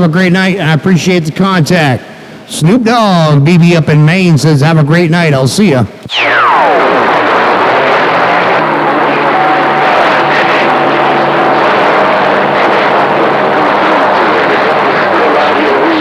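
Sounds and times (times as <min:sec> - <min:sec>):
radio static rush: 0:06.1 - 0:16.0.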